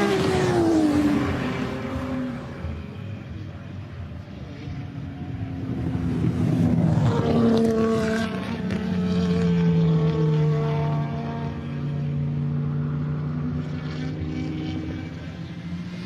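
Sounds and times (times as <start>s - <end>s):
car engine high-revving: 4.1s - 16.0s.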